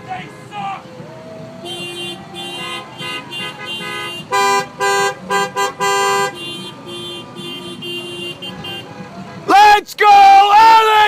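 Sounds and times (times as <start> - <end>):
car horns honking: 0.0 - 0.9, 1.6 - 9.6
loud car horn blasts: 1.6 - 9.4.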